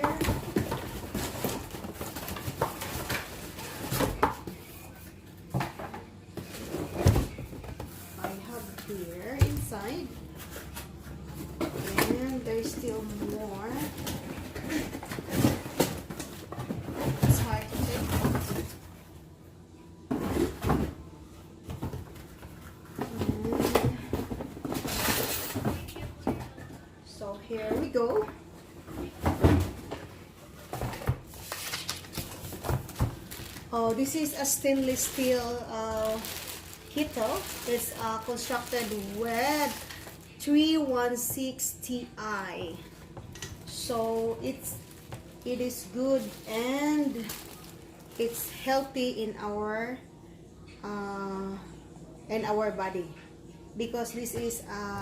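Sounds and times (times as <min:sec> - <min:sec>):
packaging rustling: 0:30.7 - 0:40.4, 0:43.6 - 0:48.4.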